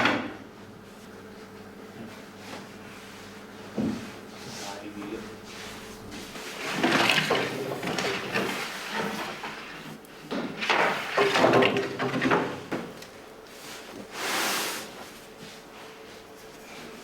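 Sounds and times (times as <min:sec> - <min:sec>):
scraping and sliding noises: 0:05.5 - 0:17.0.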